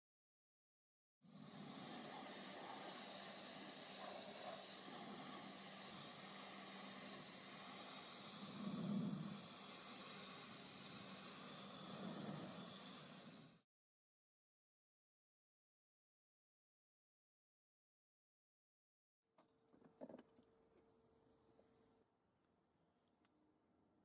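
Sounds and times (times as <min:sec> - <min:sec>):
pressure washer spraying: 0:01.3 - 0:13.6.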